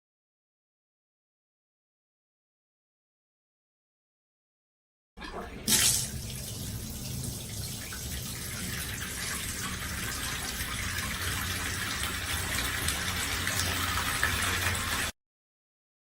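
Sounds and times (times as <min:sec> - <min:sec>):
bath water running from tap: 0:05.2 - 0:15.2.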